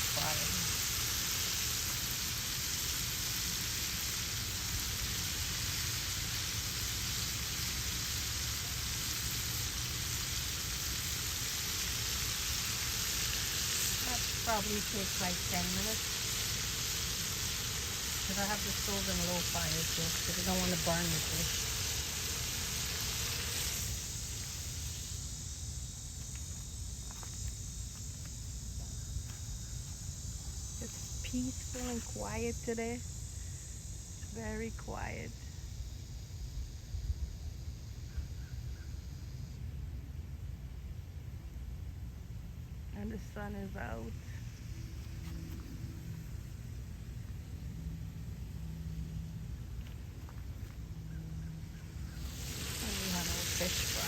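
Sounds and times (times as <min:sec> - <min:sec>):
fish deep-frying in hot oil: 0:00.0 - 0:28.6, 0:51.9 - 0:54.0.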